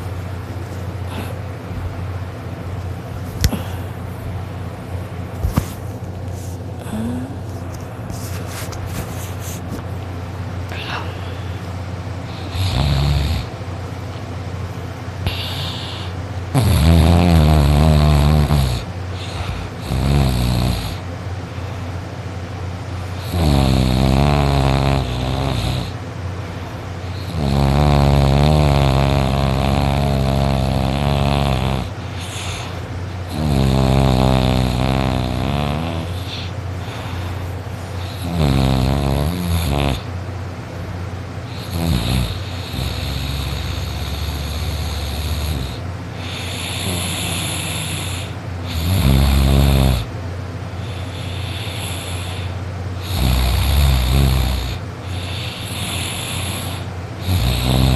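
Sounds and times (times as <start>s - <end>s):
soft breaths: 0.0s - 1.6s, 3.2s - 4.5s, 5.4s - 12.6s, 15.2s - 16.3s, 31.8s - 33.3s, 35.8s - 38.3s, 42.4s - 48.8s, 50.7s - 53.6s, 54.7s - 57.0s
boy snoring loudly: 6.8s - 7.4s, 12.3s - 13.5s, 15.3s - 21.0s, 23.2s - 26.0s, 27.1s - 32.7s, 33.3s - 37.1s, 38.0s - 40.1s, 41.5s - 50.1s, 50.9s - 57.9s.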